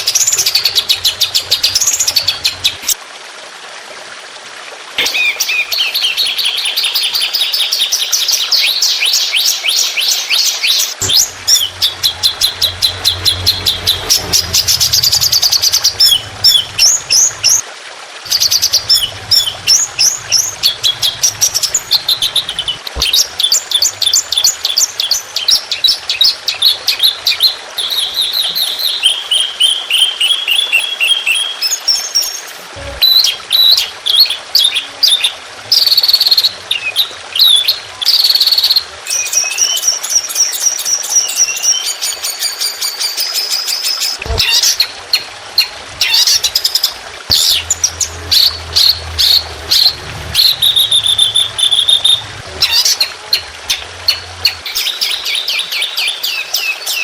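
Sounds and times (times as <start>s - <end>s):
low hum: 0.0s - 3.0s, 11.0s - 17.6s, 18.3s - 25.1s, 47.2s - 55.1s
songbird song: 0.0s - 3.0s, 5.0s - 17.6s, 18.3s - 57.0s.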